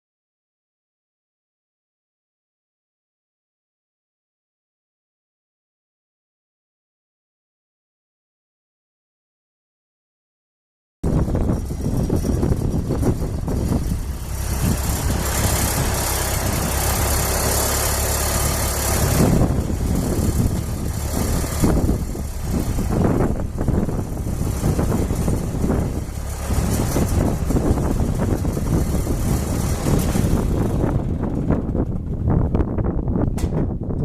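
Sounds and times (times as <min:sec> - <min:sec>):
tractor engine running: 0:11.0 - 0:34.0.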